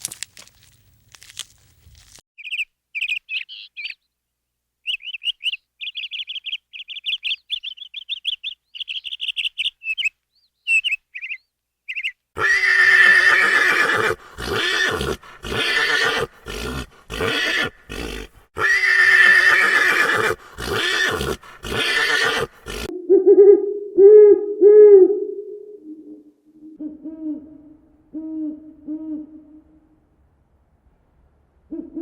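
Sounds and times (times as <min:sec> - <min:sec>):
bird chirps: 0:02.4 - 0:04.2, 0:04.8 - 0:12.2
horse neighing: 0:12.4 - 0:22.9
owl hoots: 0:19.6 - 0:25.2.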